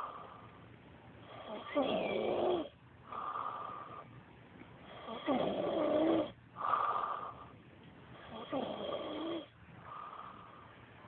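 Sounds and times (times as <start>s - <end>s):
man snoring: 1.3s - 3.7s, 4.9s - 7.4s, 8.2s - 10.4s
hissing breath: 3.1s - 4.1s, 9.8s - 10.8s.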